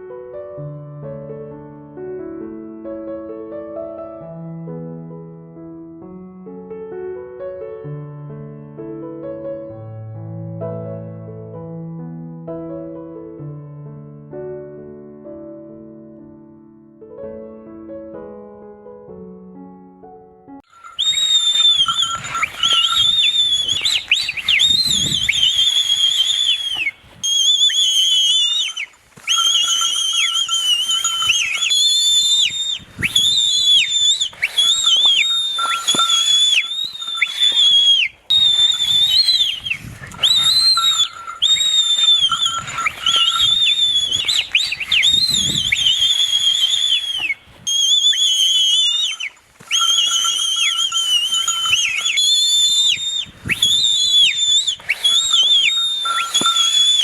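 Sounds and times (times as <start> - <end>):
high whistling blasts: 20.7 - 57.0.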